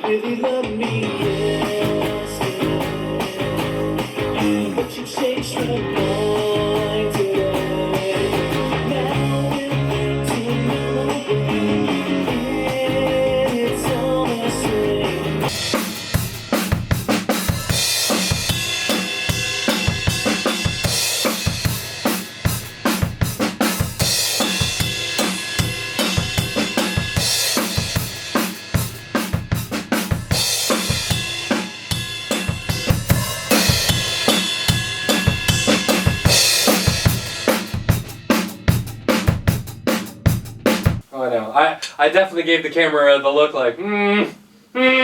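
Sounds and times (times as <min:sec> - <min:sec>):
rock band playing: 0:00.0 - 0:41.1
kick and snare beat: 0:15.5 - 0:41.0.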